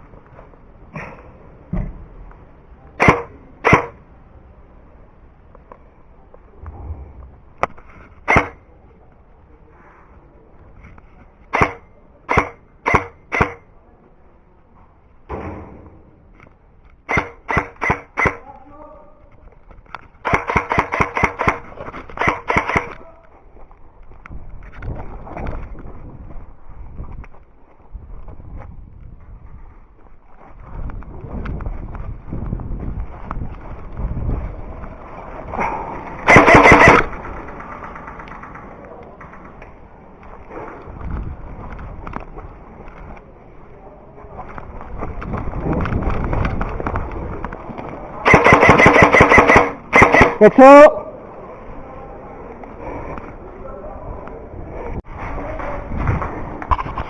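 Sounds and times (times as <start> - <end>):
rustling of movement: 0.0 - 11.9, 18.9 - 49.9
airsoft rifle shots: 3.0 - 4.0, 8.3 - 8.6, 11.5 - 13.6, 17.0 - 18.4, 20.2 - 23.0, 36.2 - 37.7, 48.2 - 50.9.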